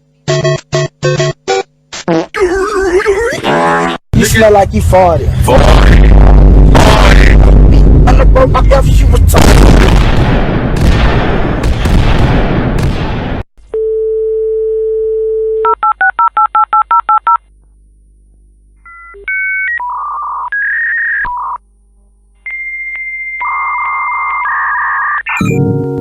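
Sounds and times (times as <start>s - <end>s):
loud burst of noise: 4.2s - 12.8s
touch-tone dialing beeps: 13.8s - 17.4s.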